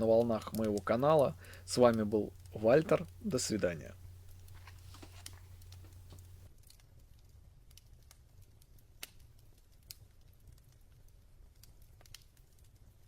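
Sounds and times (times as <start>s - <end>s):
faint irregular clicks: 0.0s - 3.2s, 3.9s - 6.8s
low hum: 0.0s - 6.5s.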